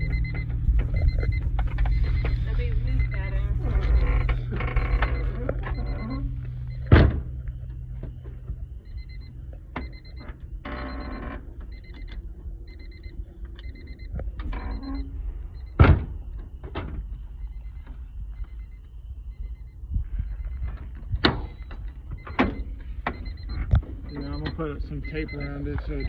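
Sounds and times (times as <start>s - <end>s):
high electronic chime beeping: 0.0s - 6.2s
car door shutting with thud: 6.8s - 7.3s, 15.8s - 17.0s.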